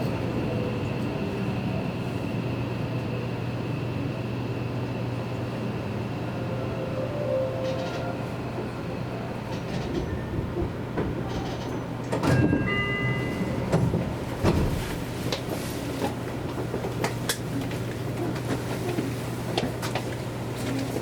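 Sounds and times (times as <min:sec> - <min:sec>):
electric train hum: 0:00.0 - 0:21.0
high ringing tone: 0:06.4 - 0:08.9, 0:12.4 - 0:13.6.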